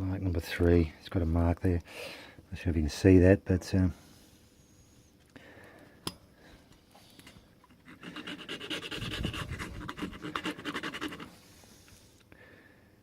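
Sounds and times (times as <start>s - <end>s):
hand file rasping on metal: 7.8s - 11.3s.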